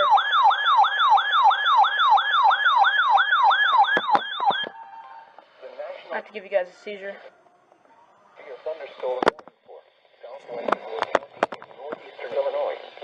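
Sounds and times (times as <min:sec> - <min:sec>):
electronic siren whooping: 0:00.0 - 0:05.5.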